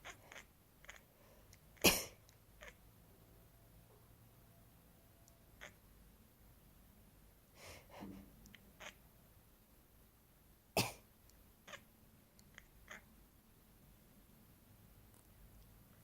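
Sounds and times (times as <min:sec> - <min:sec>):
person coughing: 0:01.8 - 0:02.2, 0:10.8 - 0:11.0.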